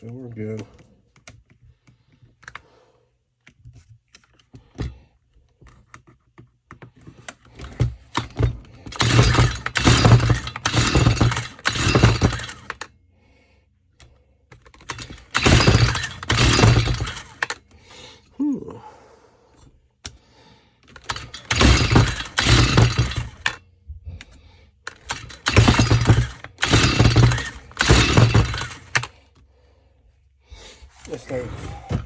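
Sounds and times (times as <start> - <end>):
clicking handling of parts: 0.0 - 2.6, 3.4 - 12.9, 14.0 - 17.8, 20.8 - 23.6, 24.2 - 29.4
recoil starter pulls rattling: 7.3 - 12.9, 14.6 - 17.7, 20.8 - 23.6, 24.9 - 29.2
small engine cranking: 7.6 - 12.9, 14.6 - 17.6, 20.9 - 23.6, 24.9 - 29.1.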